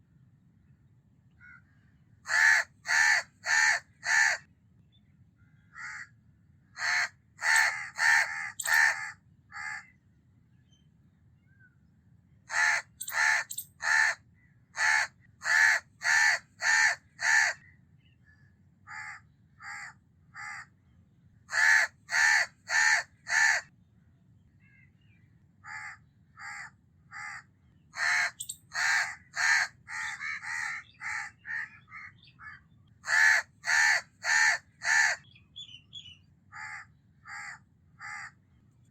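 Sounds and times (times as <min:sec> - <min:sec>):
crow cawing: 0:02.3 - 0:04.4, 0:05.7 - 0:06.1, 0:06.8 - 0:09.8, 0:12.5 - 0:14.2, 0:14.8 - 0:17.6, 0:18.9 - 0:20.7, 0:21.5 - 0:23.6, 0:25.6 - 0:27.4, 0:28.0 - 0:32.1, 0:33.0 - 0:35.2, 0:36.5 - 0:38.4.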